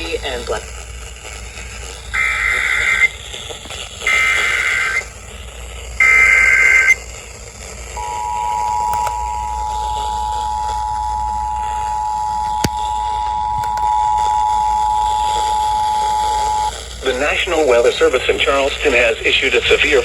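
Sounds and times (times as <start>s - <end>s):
shrill warbling data bursts: 2.1s - 3.4s, 4.0s - 5.1s, 6.0s - 7.0s
two-tone attention signal: 8.0s - 16.7s.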